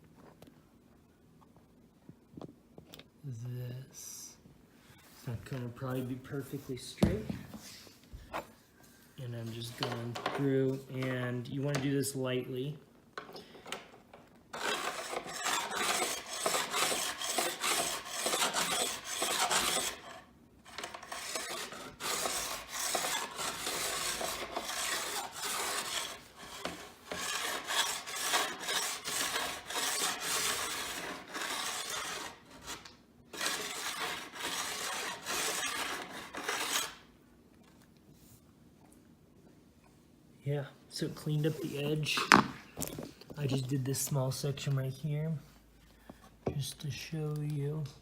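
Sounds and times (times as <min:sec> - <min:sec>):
edge tuner rasping on steel edge: 0:14.6 - 0:37.0.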